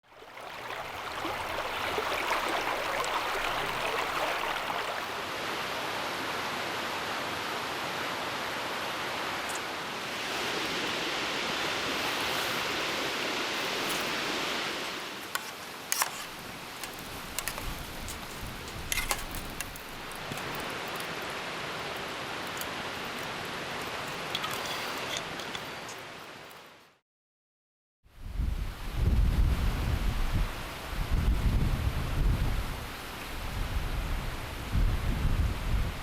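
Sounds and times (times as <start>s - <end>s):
strong wind gusting: 28.2s - 36.0s.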